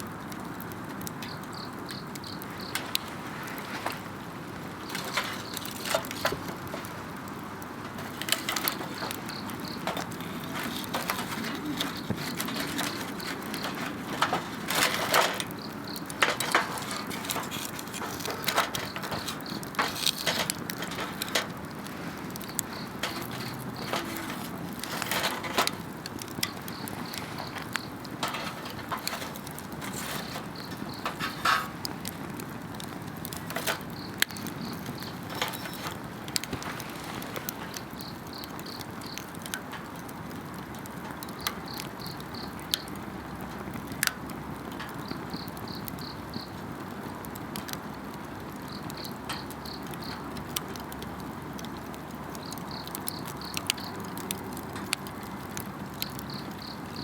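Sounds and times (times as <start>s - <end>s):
wood fire crackling: 0.0s - 57.0s
insects chirping: 1.2s - 39.3s, 41.3s - 43.0s, 45.0s - 46.6s, 48.6s - 50.3s, 56.0s - 57.0s.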